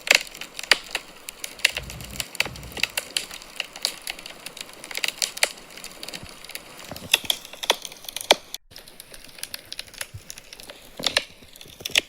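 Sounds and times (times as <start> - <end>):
wood fire crackling and popping: 0.0 - 12.0
soft low rumble: 1.7 - 3.3.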